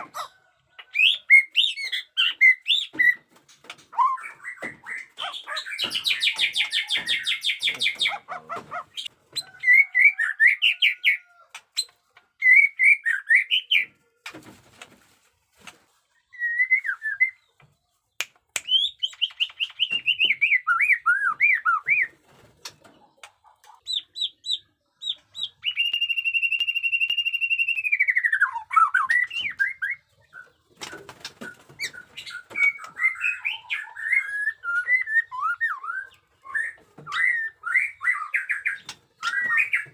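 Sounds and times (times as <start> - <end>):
bird singing whistled phrases: 16.4 - 17.4, 18.6 - 22.1, 25.6 - 30.0, 32.6 - 39.8.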